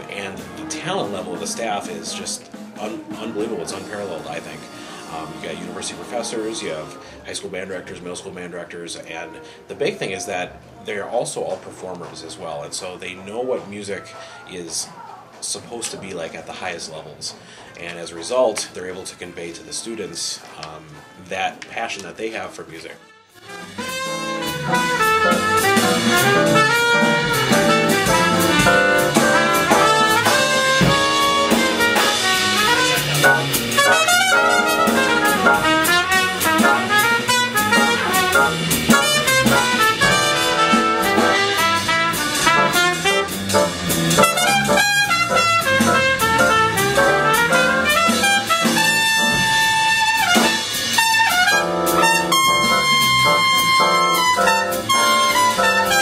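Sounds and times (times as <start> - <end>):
jazz ensemble playing: 0.0 - 7.7, 23.1 - 56.0.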